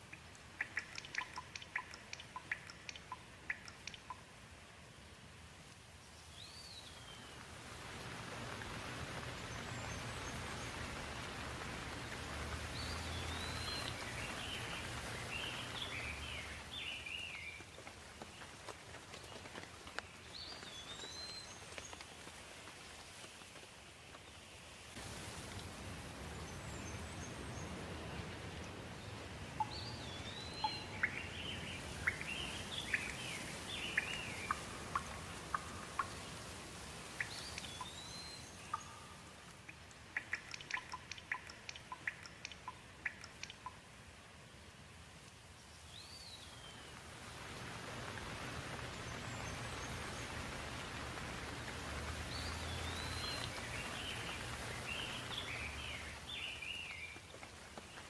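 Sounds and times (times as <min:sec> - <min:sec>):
songbird singing: 0:00.0 - 0:04.3, 0:06.1 - 0:22.1, 0:26.2 - 0:43.8, 0:45.6 - 0:47.1, 0:47.8 - 0:58.0
sharp dripping ticks: 0:00.0 - 0:04.5, 0:08.5 - 0:22.4, 0:26.5 - 0:44.1, 0:47.9 - 0:58.0
steady rain: 0:00.0 - 0:58.0.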